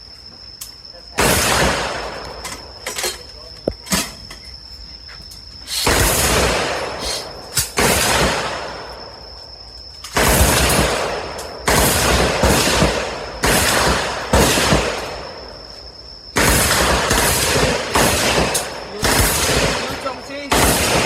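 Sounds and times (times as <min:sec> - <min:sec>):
pistol shots echoing: 0:01.2 - 0:02.7, 0:05.9 - 0:09.1, 0:10.2 - 0:15.5, 0:16.4 - 0:21.0.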